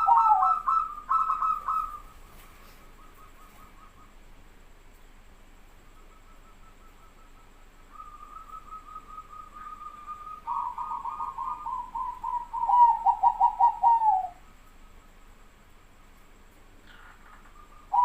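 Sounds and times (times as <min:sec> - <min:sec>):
dove cooing: 0:00.0 - 0:04.2, 0:06.3 - 0:14.5, 0:16.9 - 0:18.0.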